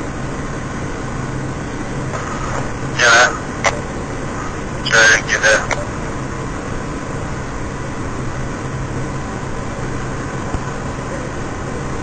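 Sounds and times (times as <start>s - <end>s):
vehicle engine droning: 0.0s - 12.0s
noise wash: 0.6s - 6.5s.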